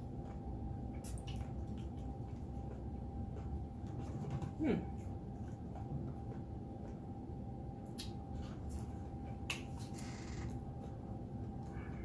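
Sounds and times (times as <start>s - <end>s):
mouth chewing sounds: 0.2s - 2.9s, 7.8s - 8.9s.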